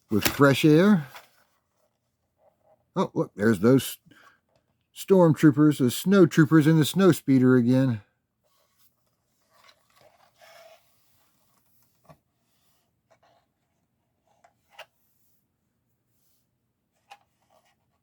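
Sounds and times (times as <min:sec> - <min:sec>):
plastic toy rubbing and scraping: 0:08.4 - 0:15.0.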